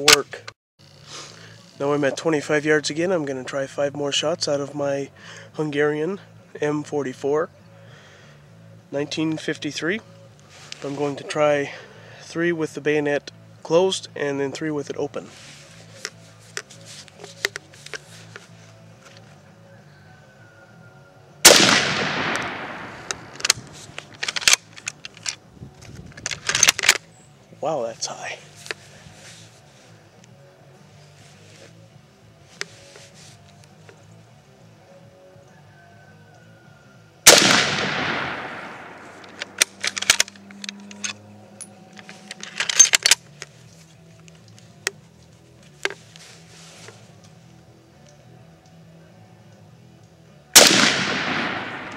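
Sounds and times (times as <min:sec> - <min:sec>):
rifle shot: 0:21.4 - 0:24.6, 0:37.3 - 0:40.3, 0:50.6 - 0:51.9
rifle bolt clicking: 0:21.5 - 0:25.4, 0:37.3 - 0:41.2, 0:50.6 - 0:51.9.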